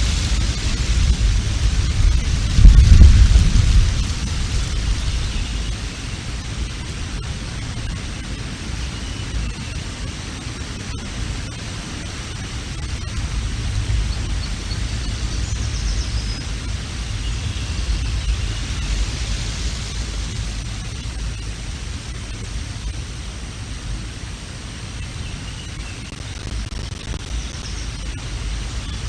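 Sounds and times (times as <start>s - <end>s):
wind buffeting microphone: 0.0s - 7.4s
faint high bird chirps: 25.3s - 28.0s.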